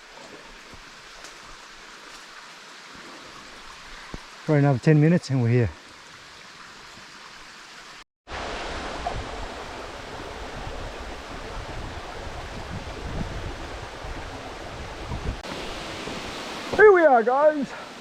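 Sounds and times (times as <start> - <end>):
creek water rushing: 0.0 - 18.0
waterfall rushing: 8.3 - 18.0.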